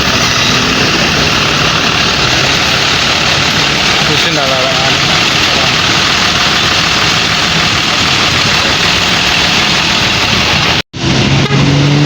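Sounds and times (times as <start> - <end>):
diesel engine idling: 0.0 - 10.8
road noise: 0.0 - 12.0.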